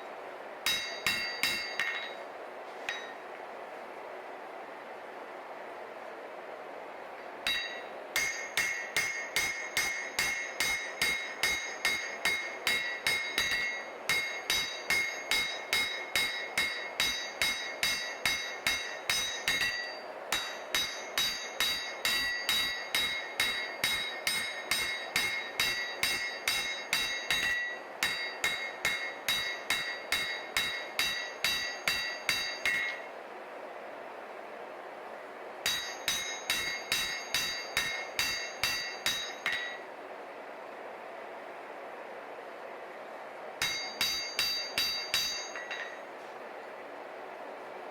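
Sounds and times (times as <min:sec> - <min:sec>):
hammer striking steel on anvil: 0:00.7 - 0:02.2, 0:02.9 - 0:03.2, 0:07.5 - 0:33.1, 0:35.6 - 0:39.9, 0:43.6 - 0:46.1.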